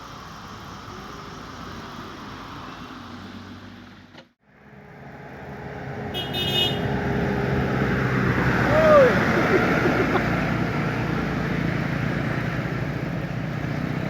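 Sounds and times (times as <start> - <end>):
vehicle engine and road noise: 0.0 - 14.0
high-pitched horn toot: 6.2 - 6.9.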